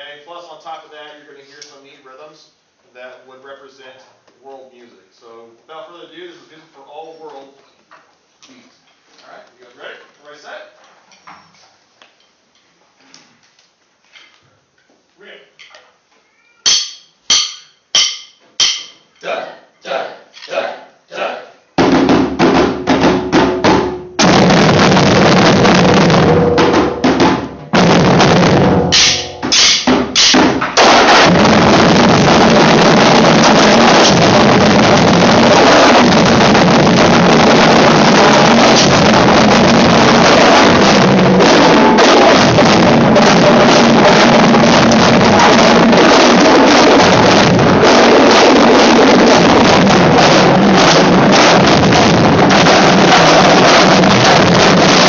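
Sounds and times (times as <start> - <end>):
drumline and hand drums playing: 16.7 - 19.0, 21.8 - 55.0.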